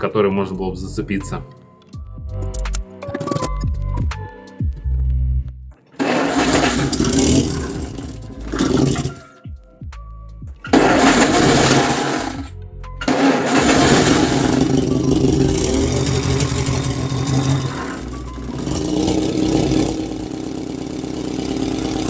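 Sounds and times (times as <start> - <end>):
engine running steadily: 6.0 - 9.3, 10.6 - 22.0
engine spinning down: 6.0 - 9.3, 10.7 - 22.0.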